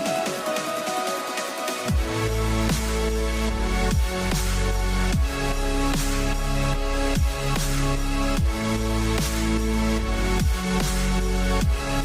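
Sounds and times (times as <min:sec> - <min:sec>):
synth chords: 0:00.0 - 0:12.0.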